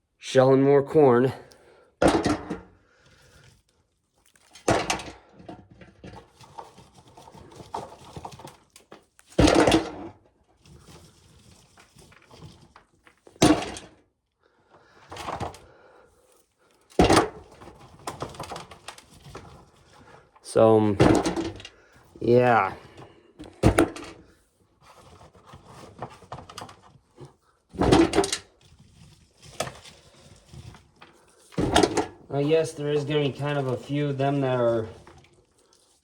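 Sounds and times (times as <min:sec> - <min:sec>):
corn kernels crackling and rattling: 0:06.0 - 0:09.6, 0:27.8 - 0:36.0.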